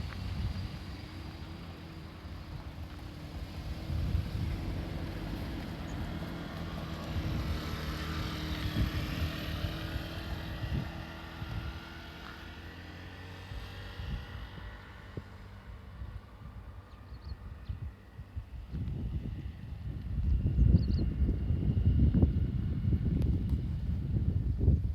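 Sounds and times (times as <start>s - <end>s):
railcar engine drone: 0.0s - 17.4s
wind rumbling on microphone: 0.0s - 24.9s.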